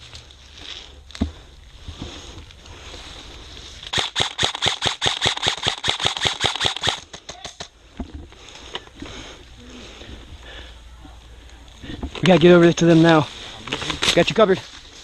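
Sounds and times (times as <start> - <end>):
airsoft gun shots: 3.9 - 7.7.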